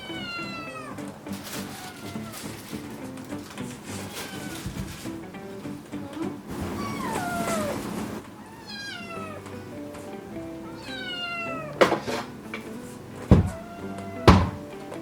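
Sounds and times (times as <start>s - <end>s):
kitten meowing: 0.0s - 1.0s, 1.6s - 2.4s, 4.1s - 4.8s, 6.1s - 7.8s, 8.4s - 9.4s, 10.6s - 11.8s
background music: 0.0s - 15.0s
sharp thuds: 13.3s - 13.6s.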